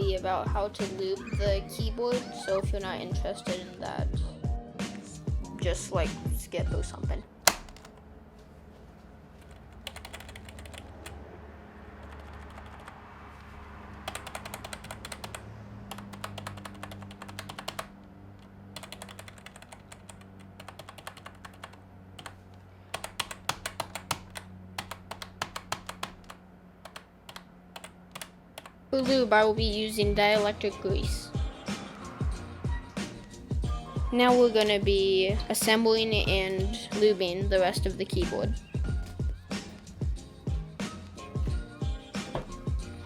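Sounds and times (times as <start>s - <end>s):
keyboard key clicks: 7.5s - 8.0s.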